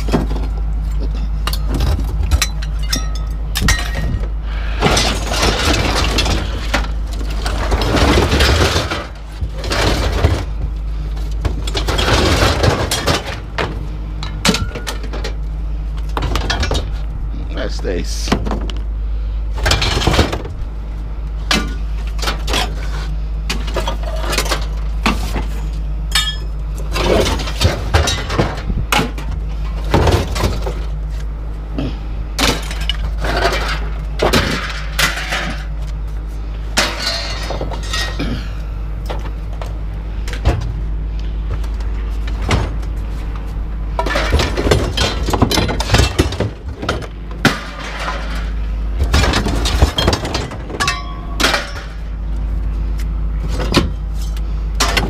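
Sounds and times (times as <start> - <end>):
scrap clinking and clattering: 0.0 - 4.2, 36.8 - 38.5, 43.9 - 52.0
steady low hum: 0.0 - 55.0
glass breaking: 49.1 - 52.0.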